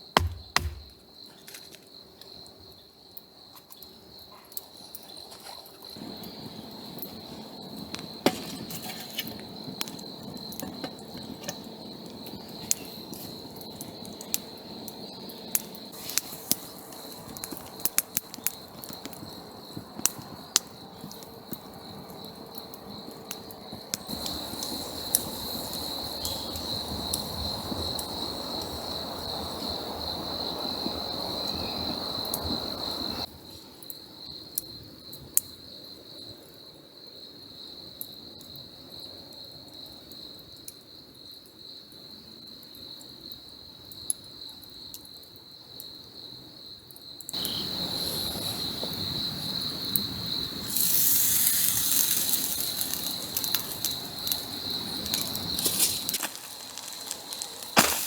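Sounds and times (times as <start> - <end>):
crickets chirring: 0.0 - 58.0
campfire crackling and popping: 4.6 - 29.6, 49.9 - 58.0
loud steady hiss: 15.8 - 17.7, 24.1 - 28.8, 50.1 - 58.0.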